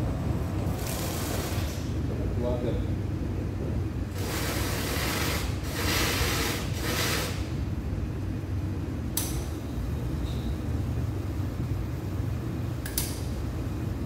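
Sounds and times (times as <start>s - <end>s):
steady low hum: 0.0s - 14.0s
sharp click: 9.2s - 9.5s, 12.8s - 13.3s.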